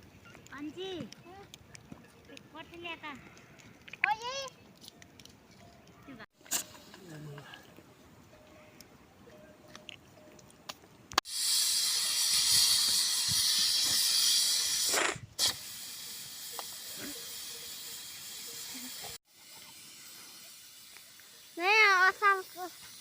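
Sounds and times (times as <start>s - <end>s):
pressure cooker hissing steam: 11.2s - 23.0s.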